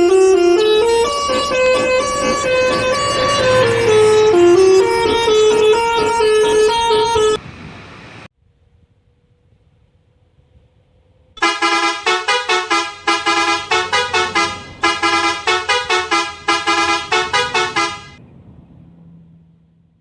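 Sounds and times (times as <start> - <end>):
musical bus horn playing tune: 0.0 - 7.4, 11.4 - 18.2.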